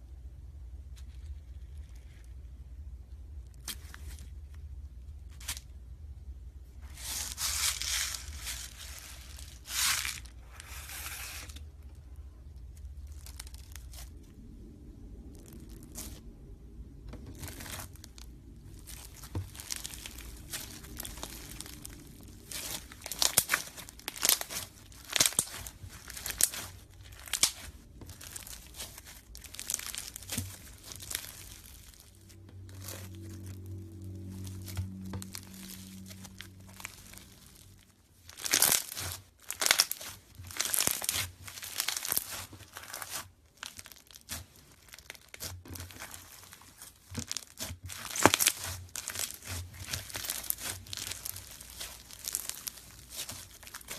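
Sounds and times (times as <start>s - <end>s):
slime wet tearing and crinkling: 3.3s - 5.7s, 6.8s - 53.9s
slime crackling snaps: 17.2s - 31.9s, 38.3s - 53.9s.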